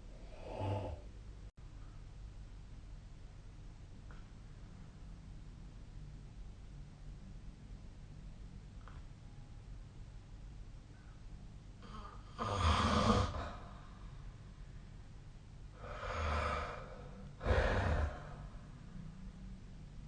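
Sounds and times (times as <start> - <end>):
person snoring: 0.2 - 1.1, 11.8 - 13.8, 15.8 - 18.6.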